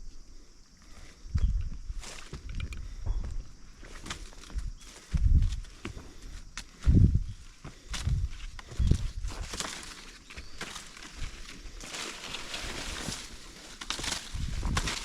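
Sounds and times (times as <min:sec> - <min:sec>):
footsteps crunching on trail: 0:00.8 - 0:15.0
heavy low thuds: 0:01.2 - 0:06.2, 0:06.8 - 0:09.5.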